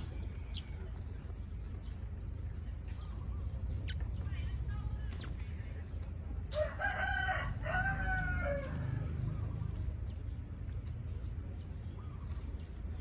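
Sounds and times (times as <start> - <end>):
steady low rumble: 0.0 - 13.0
rooster crowing: 6.5 - 9.3.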